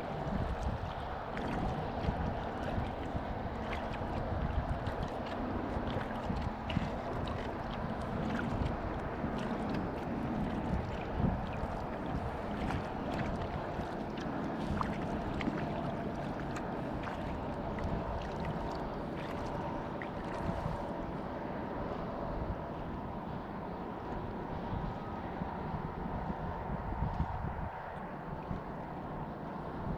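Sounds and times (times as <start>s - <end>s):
paddle splashing water: 0.0s - 21.6s
wind on microphone: 0.0s - 29.9s.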